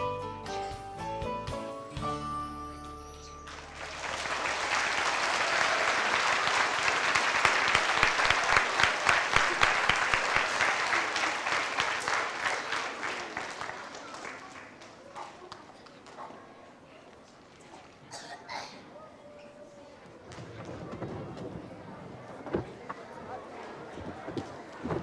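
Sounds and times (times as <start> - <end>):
audience applauding: 3.5 - 15.4.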